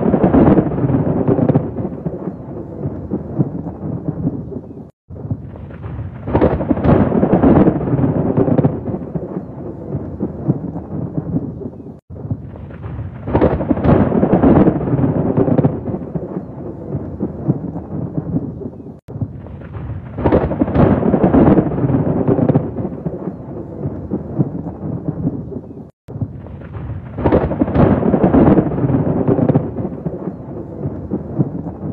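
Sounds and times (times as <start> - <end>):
rolling thunder: 0.0 - 31.9
steady rain: 0.0 - 31.9.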